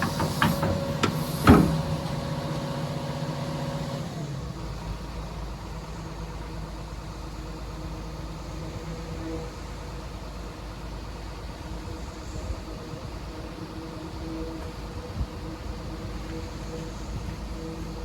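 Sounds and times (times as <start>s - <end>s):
sharp metal knocks and clanks: 0.0s - 2.0s
excavator engine hum: 0.0s - 18.0s.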